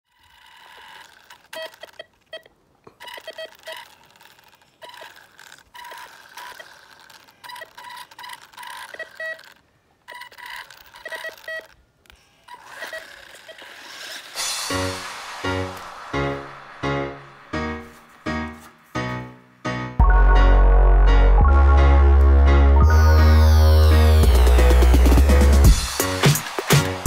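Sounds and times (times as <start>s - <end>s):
metal detector buzzer beeping: 0.5s - 4.0s, 4.8s - 11.8s.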